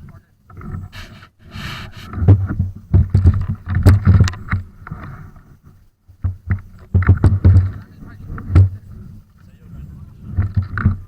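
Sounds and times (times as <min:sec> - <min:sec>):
handling knocks on microphone: 0:02.2 - 0:05.1, 0:06.2 - 0:08.9
wind buffeting microphone: 0:06.2 - 0:11.0.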